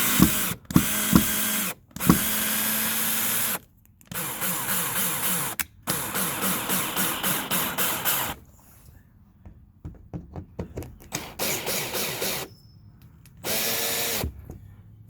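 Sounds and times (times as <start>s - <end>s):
cordless drill running: 0.0s - 8.4s, 11.2s - 12.5s, 13.4s - 14.3s.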